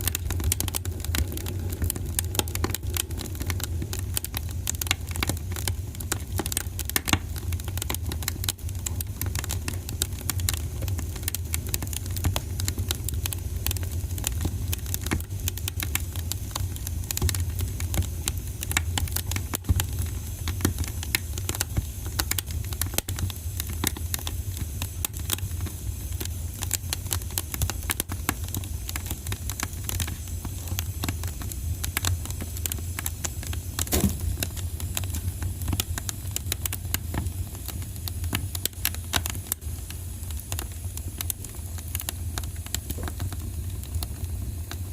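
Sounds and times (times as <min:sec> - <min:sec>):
low rumble of burning: 0:00.0 - 0:44.9
wood fire crackling and popping: 0:00.0 - 0:44.9.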